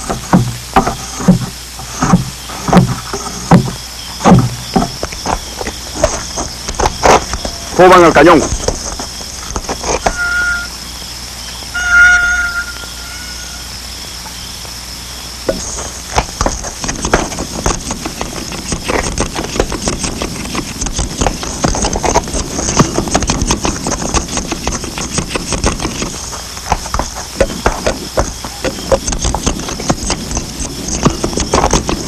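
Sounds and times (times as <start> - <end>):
clatter of footsteps and knocks: 0.0 - 10.2, 15.5 - 32.0.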